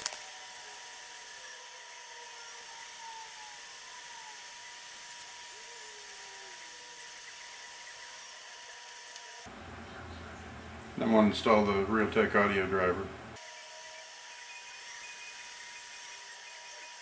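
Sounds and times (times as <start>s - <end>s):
computer whine and hiss: 0.0s - 9.5s, 11.0s - 17.0s
optical drive spinning: 0.0s - 9.5s, 13.4s - 17.0s.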